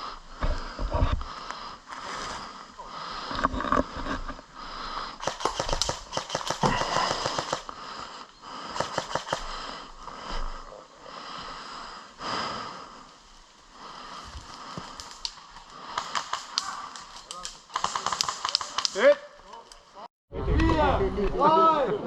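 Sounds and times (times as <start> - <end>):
airsoft guns firing bursts: 5.2 - 7.7, 8.7 - 9.7, 15.9 - 19.1.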